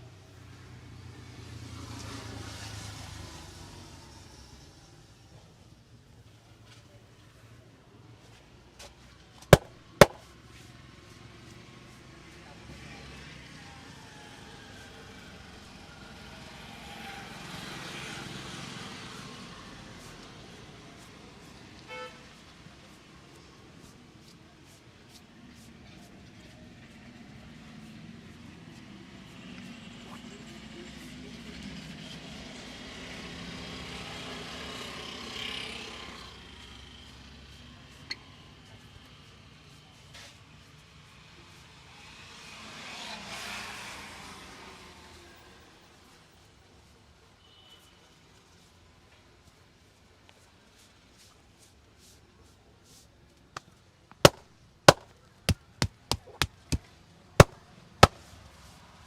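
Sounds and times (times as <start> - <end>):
road traffic passing: 0.1 - 47.3, 48.3 - 59.0
hands slapping a head: 9.6 - 10.2, 54.3 - 58.2.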